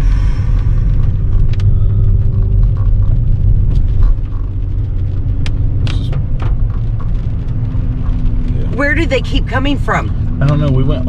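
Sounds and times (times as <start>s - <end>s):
car engine and road rumble: 0.0s - 11.0s.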